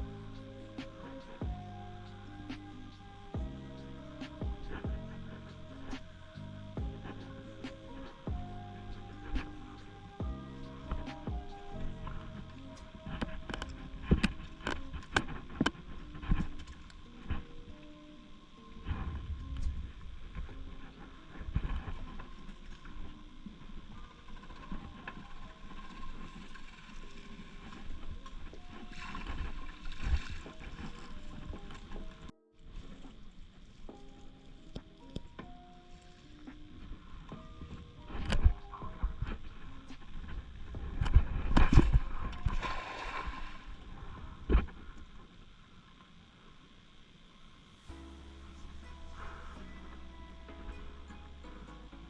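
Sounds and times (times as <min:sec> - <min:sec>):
water sloshing and splashing: 0:18.7 - 0:45.1.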